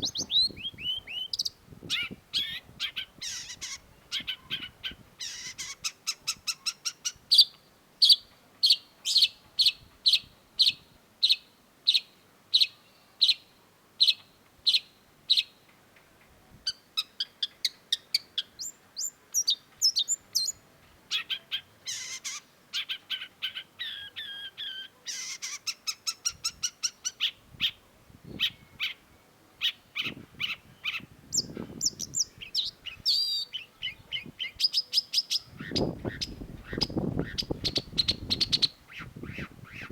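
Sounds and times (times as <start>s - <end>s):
shrike singing: 0.0s - 6.2s.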